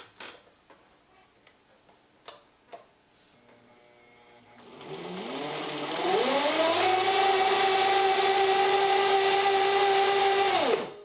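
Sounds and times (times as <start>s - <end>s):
sewing machine motor whining: 4.6s - 11.0s.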